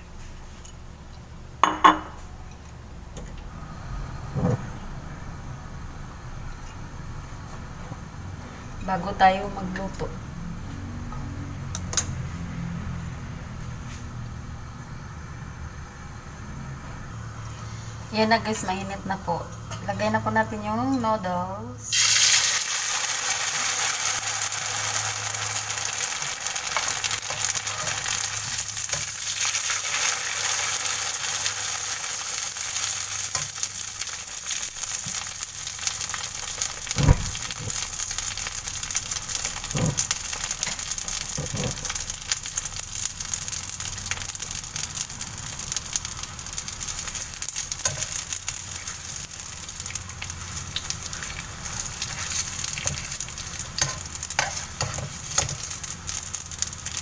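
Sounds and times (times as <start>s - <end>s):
noodles sizzling in hot oil: 21.8s - 57.0s.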